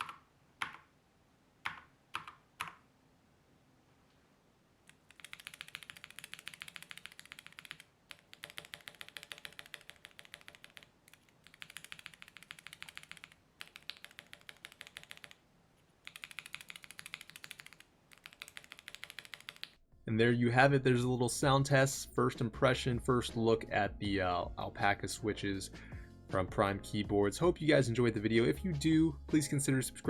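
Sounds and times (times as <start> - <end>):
mechanical keyboard typing: 0.0 - 0.9, 1.6 - 2.8, 4.9 - 15.4, 16.0 - 19.8.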